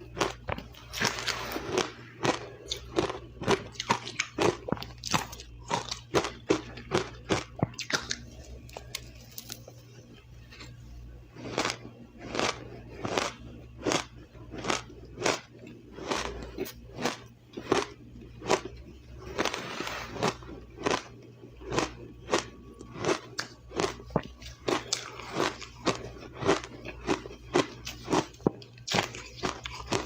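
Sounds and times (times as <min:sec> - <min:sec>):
crushed ice being chewed: 0:00.0 - 0:30.0.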